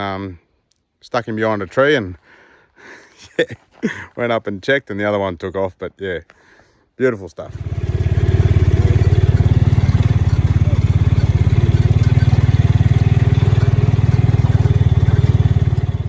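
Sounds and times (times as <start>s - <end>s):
vehicle engine running: 7.5s - 16.0s.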